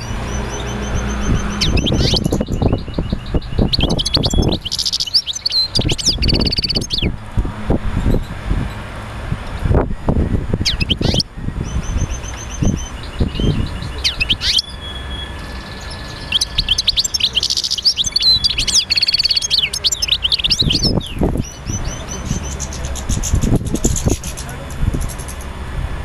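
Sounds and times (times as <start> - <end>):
low rumbling noise: 0.0 - 19.6
birds chirping and singing: 0.0 - 25.6.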